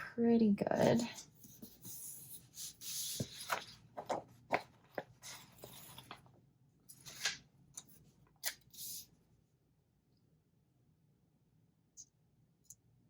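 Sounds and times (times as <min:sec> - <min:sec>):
paper rustling: 0:00.9 - 0:06.3, 0:06.9 - 0:07.4
paper stickers tapping and clicking: 0:03.0 - 0:06.2.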